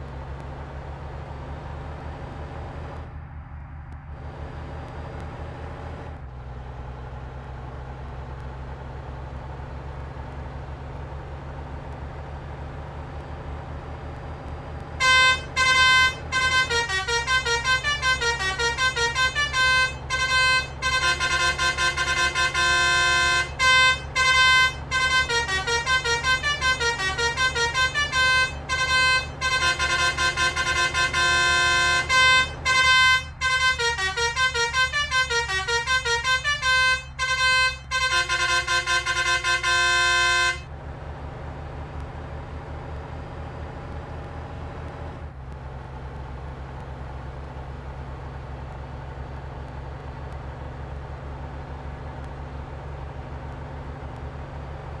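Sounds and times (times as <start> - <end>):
bus engine running: 0.0 - 55.0
road noise: 0.0 - 55.0
melodic bus horn: 14.9 - 40.7.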